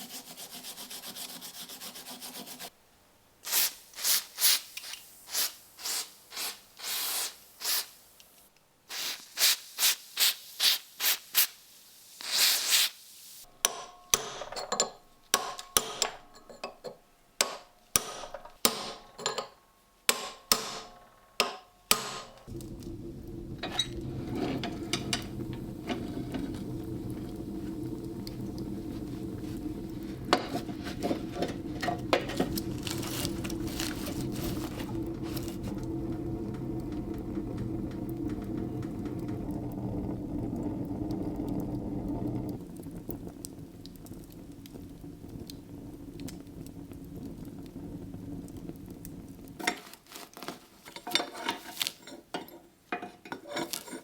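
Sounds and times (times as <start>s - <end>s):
hand tool scraping metal: 0.0s - 2.7s, 50.8s - 52.5s, 53.1s - 54.0s
steady machine hum: 22.5s - 42.6s.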